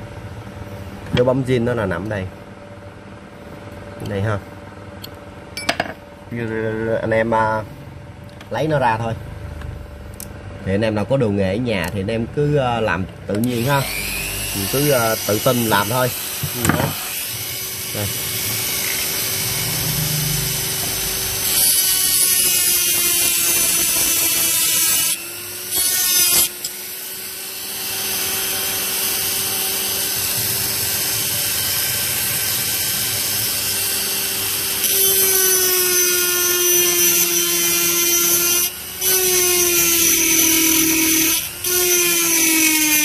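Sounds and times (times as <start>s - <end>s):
small electric drill drilling metal: 13.4s - 43.0s.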